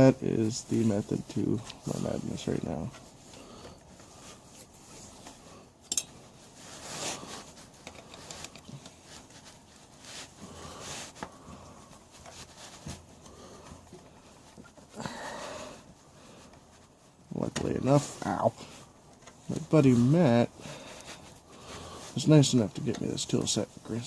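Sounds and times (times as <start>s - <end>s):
hand tools clicking and rustling: 5.8s - 6.3s, 7.7s - 9.1s.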